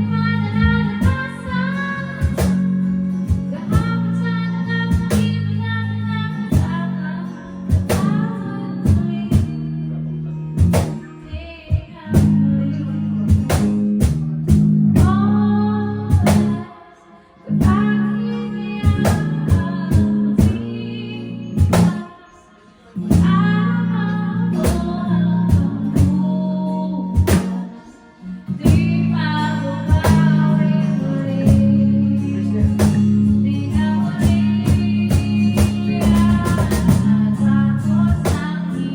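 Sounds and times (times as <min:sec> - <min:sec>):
person singing: 0:11.0 - 0:13.7, 0:15.0 - 0:38.9.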